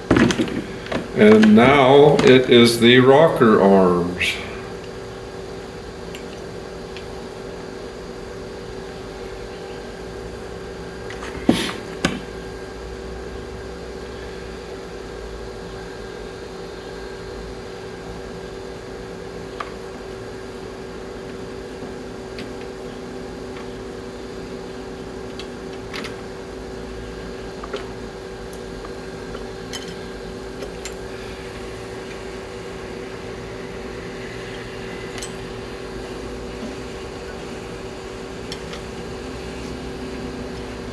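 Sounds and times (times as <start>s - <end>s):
steady mechanical hum: 0.0s - 40.9s
metal parts clinking: 29.3s - 31.0s.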